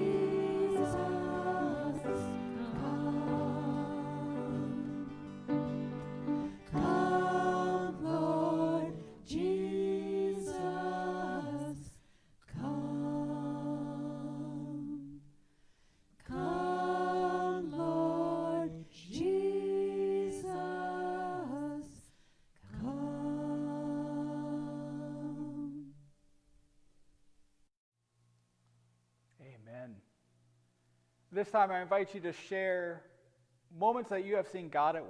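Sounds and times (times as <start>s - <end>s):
voices singing in harmony: 0.0s - 15.4s, 16.2s - 26.1s.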